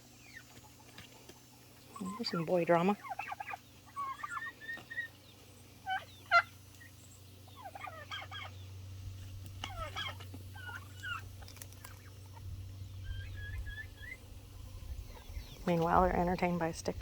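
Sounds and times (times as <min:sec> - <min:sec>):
young turkeys calling: 0:00.0 - 0:16.8
low steady hum: 0:00.0 - 0:17.0.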